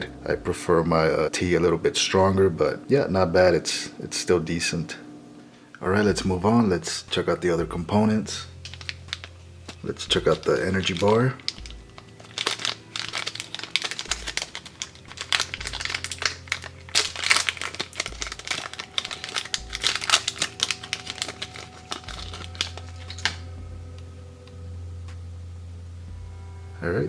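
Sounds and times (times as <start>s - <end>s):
wrapper crinkling: 7.2s - 24.6s.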